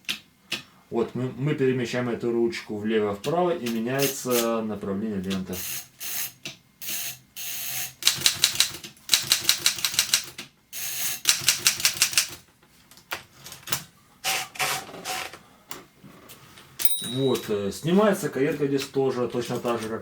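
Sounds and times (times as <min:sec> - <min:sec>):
manual typewriter clicking: 0:08.0 - 0:10.4, 0:11.2 - 0:12.4.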